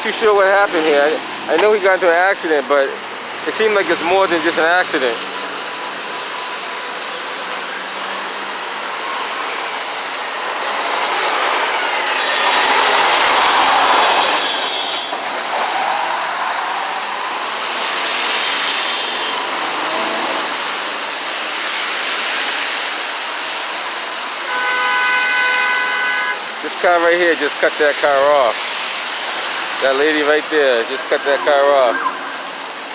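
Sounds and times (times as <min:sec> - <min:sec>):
highway traffic passing: 0:00.0 - 0:32.9
car horn honking: 0:24.4 - 0:26.5.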